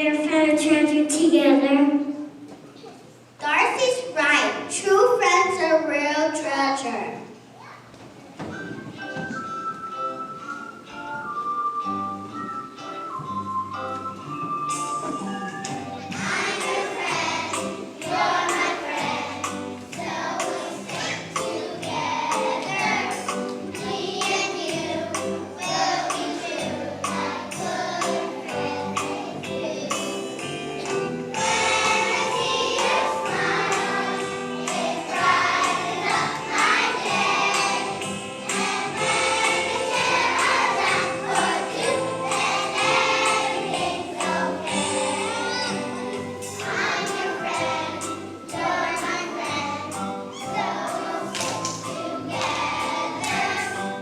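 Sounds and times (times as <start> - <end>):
accompaniment with steady beat: 14.2 - 49.5
children's choir singing: 14.7 - 54.0.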